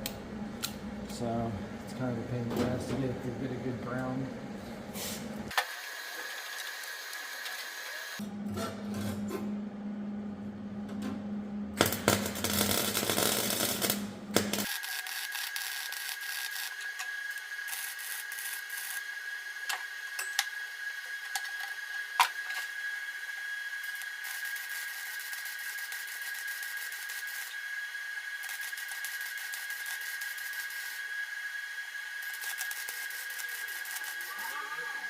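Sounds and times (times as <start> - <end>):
welder arc crackling: 11.8 - 19.8, 23.8 - 27.6, 28.2 - 31.1, 32.2 - 35.0.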